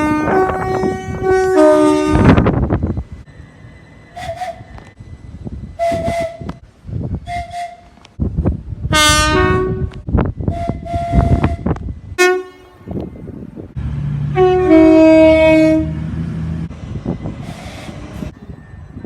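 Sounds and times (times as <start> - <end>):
train horn blasts: 0.0 - 2.5, 8.9 - 12.9, 14.3 - 16.1
train rumble and rail clatter: 0.0 - 19.0.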